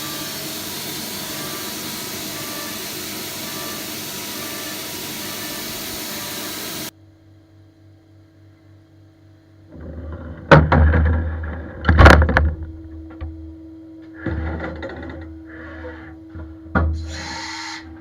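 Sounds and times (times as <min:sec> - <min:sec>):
milling machine hiss: 0:00.0 - 0:06.9, 0:17.0 - 0:18.0.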